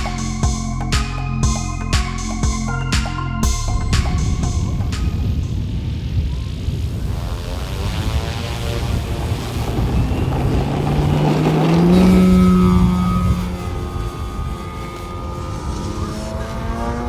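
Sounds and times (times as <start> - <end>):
model airplane motor humming: 8.8 - 17.0.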